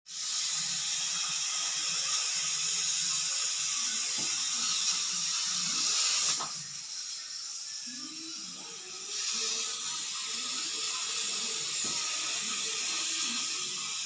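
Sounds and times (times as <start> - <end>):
pressure cooker steam hissing: 0.1 - 14.0.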